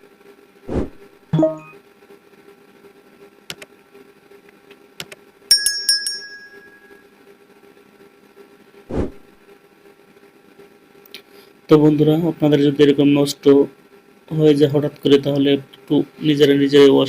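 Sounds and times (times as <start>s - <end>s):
low steady hum: 0.0s - 17.0s
metal object clinking: 5.5s - 7.0s
dull thump: 8.9s - 9.3s.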